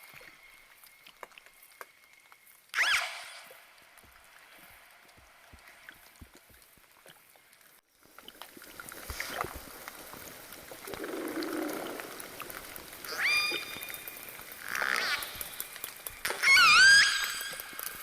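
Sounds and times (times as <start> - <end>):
faint water hiss: 0.0 - 18.0
whale echolocation clicks: 0.0 - 18.0
whale call: 13.0 - 15.7, 16.3 - 18.0.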